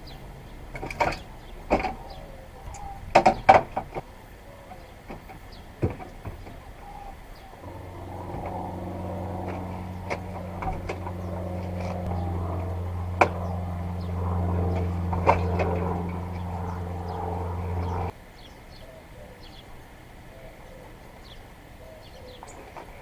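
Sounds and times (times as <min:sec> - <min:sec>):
machine humming: 0:07.6 - 0:18.1.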